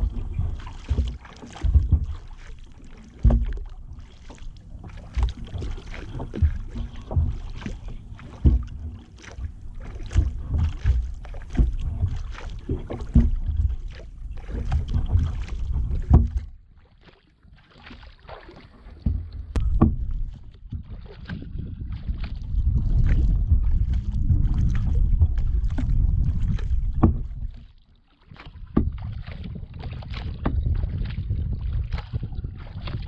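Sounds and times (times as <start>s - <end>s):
low rumble: 0.0s - 16.6s, 19.2s - 27.6s
paddle knocking: 0.0s - 27.6s, 28.3s - 33.0s
paddle strokes splashing: 0.0s - 33.0s.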